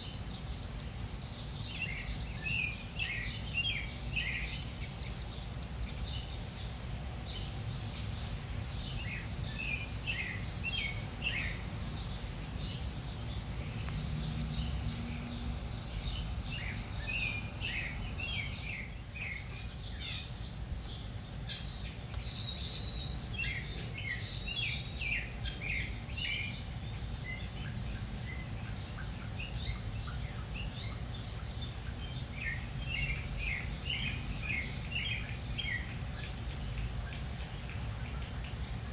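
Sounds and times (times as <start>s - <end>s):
songbirds chirping: 0.0s - 38.9s.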